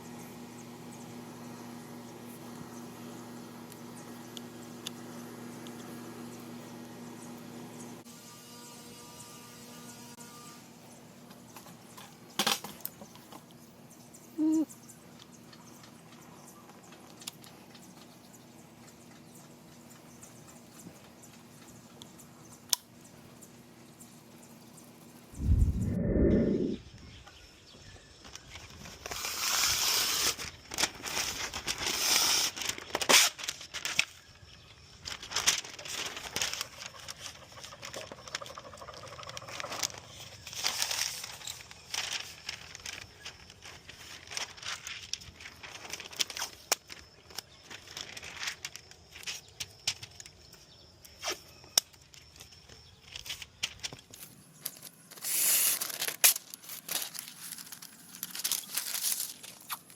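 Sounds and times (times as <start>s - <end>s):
rustling and scraping: 39.2s - 50.3s, 51.1s - 59.9s.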